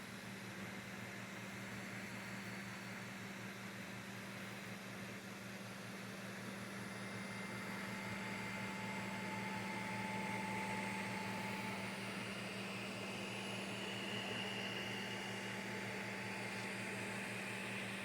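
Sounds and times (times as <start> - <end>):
fan hum: 5.8 - 18.0.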